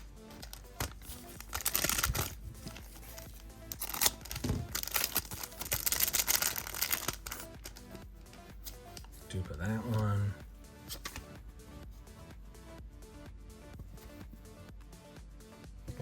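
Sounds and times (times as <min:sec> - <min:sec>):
background music: 0:00.0 - 0:16.0
plastic wrapper crinkling and tearing: 0:00.3 - 0:07.9.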